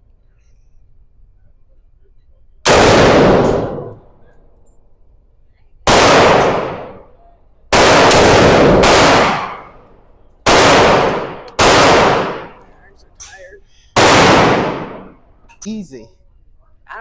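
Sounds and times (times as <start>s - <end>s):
gunshots with echo: 2.7s - 4.0s, 5.9s - 7.1s, 7.7s - 12.7s, 14.0s - 15.2s.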